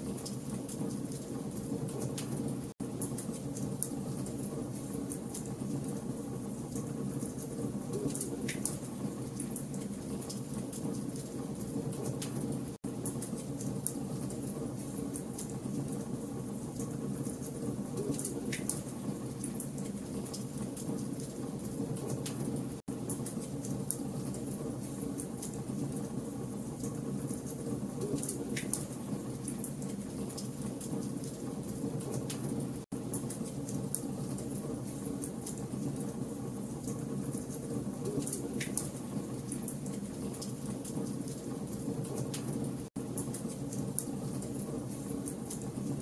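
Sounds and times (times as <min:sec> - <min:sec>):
campfire burning and crackling: 0:00.0 - 0:46.0
fire snapping: 0:00.1 - 0:06.0, 0:26.8 - 0:36.1, 0:36.8 - 0:45.9.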